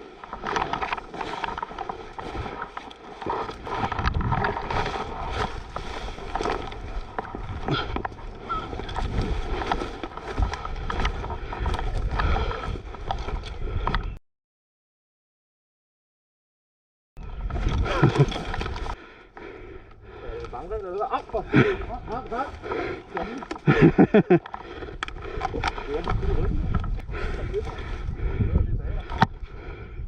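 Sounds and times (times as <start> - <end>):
rustling and scuffing of gear: 0.0 - 13.6
wind rumble on microphone: 3.5 - 14.2, 17.2 - 19.0, 19.9 - 30.0.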